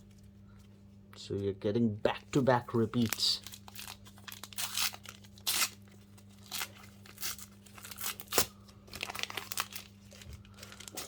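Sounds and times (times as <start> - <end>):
wrapper tearing and crinkling: 2.7 - 11.0.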